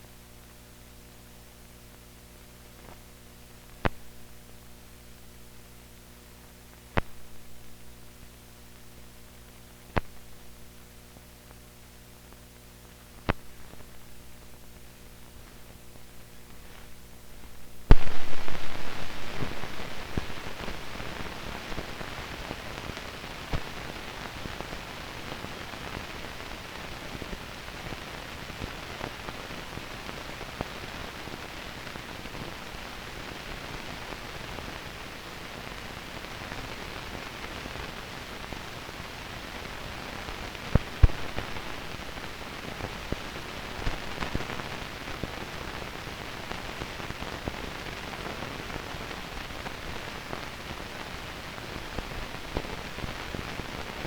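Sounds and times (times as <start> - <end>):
crackling film hiss: 0.0 - 54.0
faint steady hum: 0.0 - 54.0
loud pop: 17.9 - 20.8.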